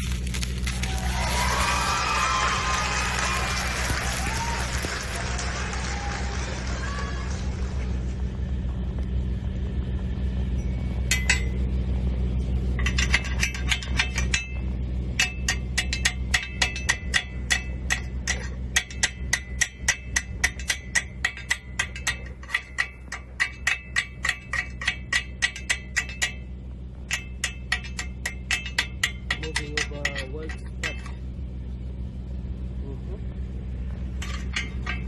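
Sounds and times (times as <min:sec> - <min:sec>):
low hum: 0:00.0 - 0:35.0
hammer striking steel: 0:11.0 - 0:11.6, 0:12.8 - 0:31.2, 0:34.2 - 0:35.0.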